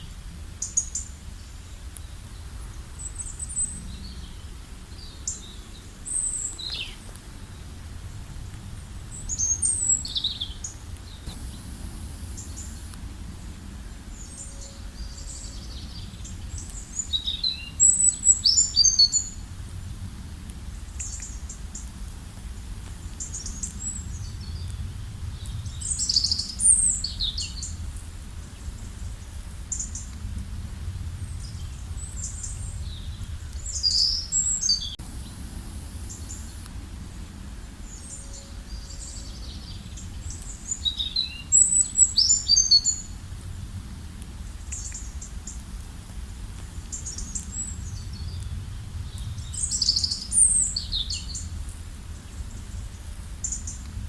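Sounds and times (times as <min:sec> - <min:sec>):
small birds chirping: 0:00.0 - 0:07.8, 0:08.8 - 0:19.4, 0:31.2 - 0:43.2, 0:46.7 - 0:53.8
steady low rumble: 0:00.0 - 0:54.0.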